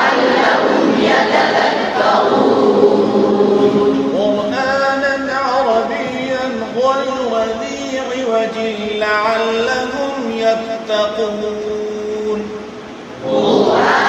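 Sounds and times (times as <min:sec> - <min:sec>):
man chanting melodic recitation: 0:03.3 - 0:13.6.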